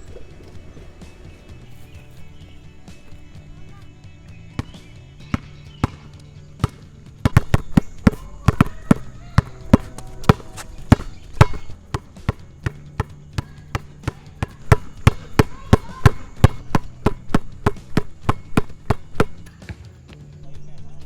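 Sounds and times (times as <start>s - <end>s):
basketballs bouncing on hard court: 4.4s - 19.9s.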